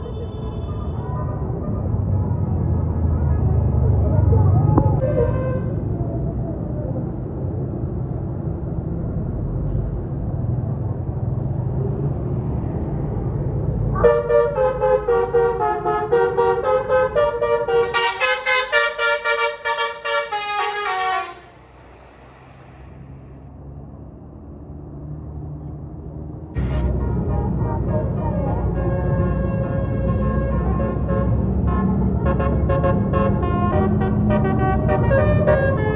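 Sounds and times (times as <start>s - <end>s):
bus horn playing pulsing melody: 0.0s - 1.0s, 5.0s - 5.8s, 14.0s - 21.9s, 26.6s - 35.9s
bus engine rumble: 0.0s - 35.9s.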